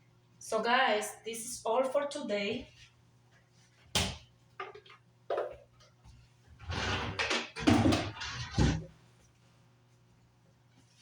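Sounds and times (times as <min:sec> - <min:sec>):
objects clattering and scraping: 0:06.6 - 0:09.0.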